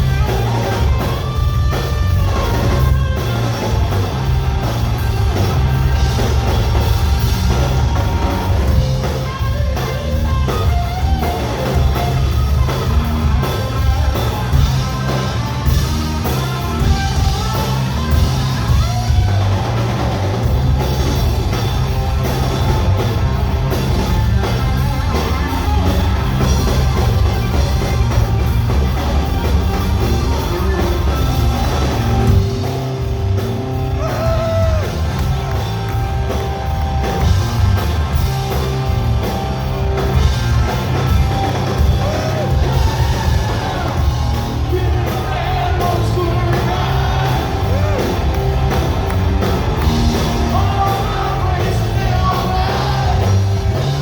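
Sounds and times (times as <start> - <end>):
rock band playing live: 0.0 - 54.0.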